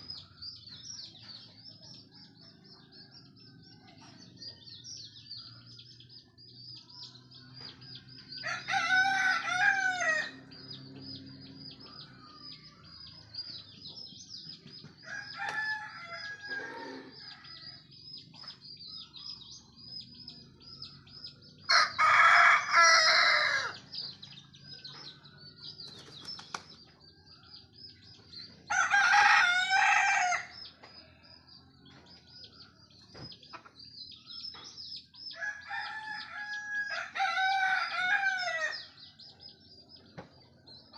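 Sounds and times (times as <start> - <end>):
high-pitched pulsing chirp: 0.0 - 37.2
rooster crowing: 8.4 - 10.4, 15.0 - 17.8, 21.7 - 23.8, 28.7 - 30.6, 35.4 - 38.9.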